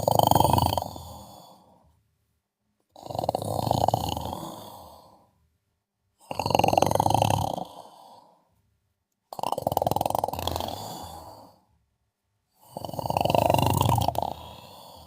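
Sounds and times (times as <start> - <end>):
person snoring: 0.0 - 1.8, 2.9 - 5.3, 6.2 - 8.5, 9.3 - 11.7, 12.5 - 15.0.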